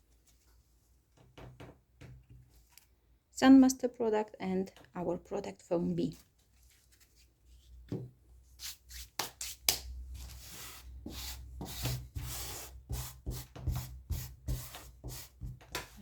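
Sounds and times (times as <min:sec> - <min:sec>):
sanding blocks scraping: 0:10.3 - 0:15.4.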